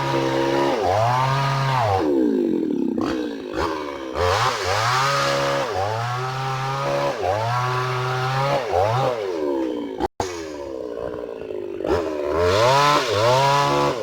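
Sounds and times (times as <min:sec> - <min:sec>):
chainsaw revving: 0:00.0 - 0:14.0.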